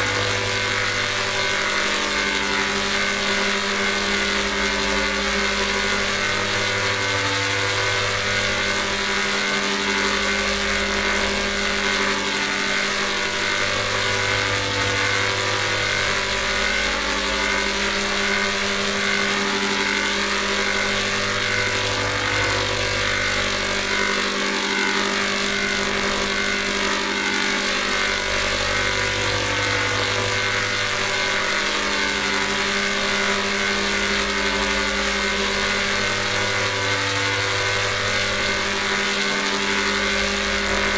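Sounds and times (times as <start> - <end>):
electronic drone: 0.0 - 40.9
low hum: 0.0 - 40.9.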